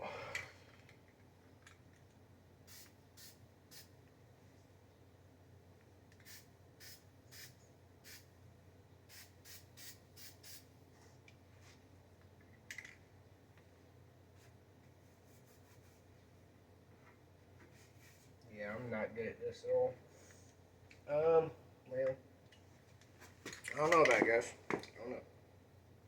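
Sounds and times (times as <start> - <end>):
spray paint hissing: 2.6 - 3.9, 6.2 - 8.3, 9.1 - 10.7.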